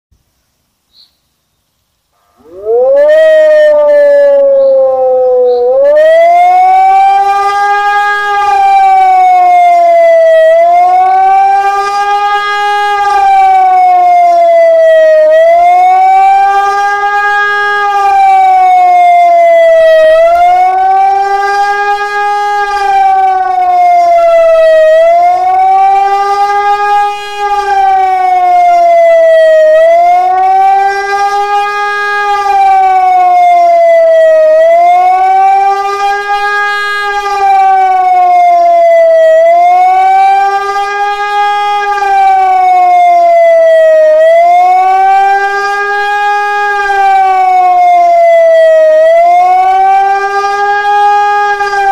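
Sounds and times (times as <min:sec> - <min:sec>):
civil defence siren rising and falling: 0:02.2 - 0:51.9.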